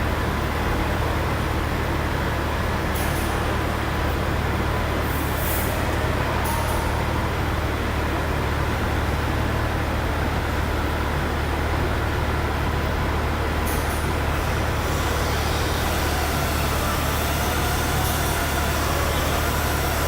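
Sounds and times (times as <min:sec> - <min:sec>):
machinery low hum: 0:00.0 - 0:20.0
machinery rushing hiss: 0:14.3 - 0:20.0.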